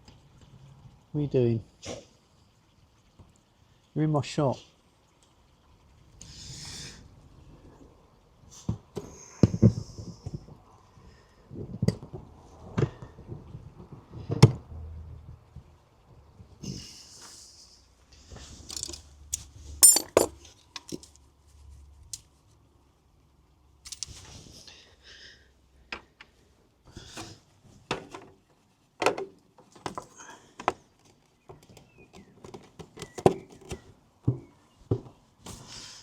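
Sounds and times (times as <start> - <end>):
metal tools clinking: 18.7 - 21.1.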